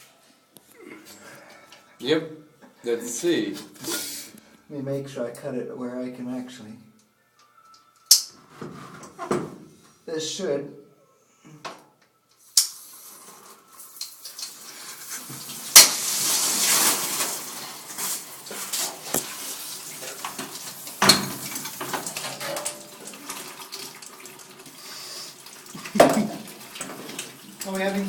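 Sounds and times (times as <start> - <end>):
water spraying from a pipe: 12.5 - 28.0.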